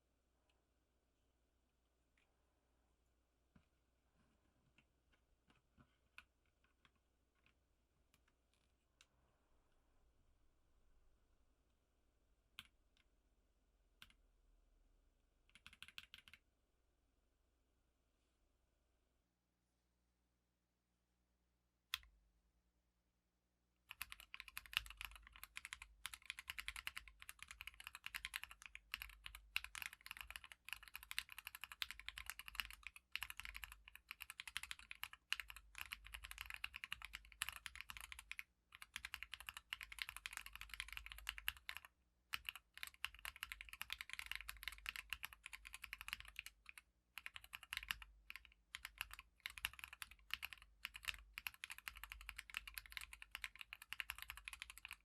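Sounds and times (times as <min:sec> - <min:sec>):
typing on mechanical keyboard: 0:15.5 - 0:16.4, 0:23.9 - 0:55.0.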